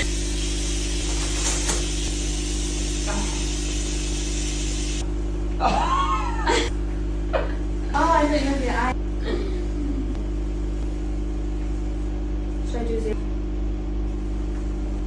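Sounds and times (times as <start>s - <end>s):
steady low hum: 0.0s - 15.0s
woman sneezing: 5.6s - 6.8s.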